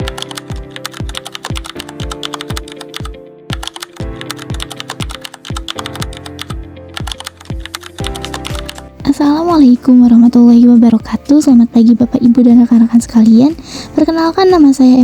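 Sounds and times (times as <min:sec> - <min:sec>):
keyboard typing clicks: 0:00.0 - 0:09.0
background music with kick drum: 0:00.0 - 0:15.0.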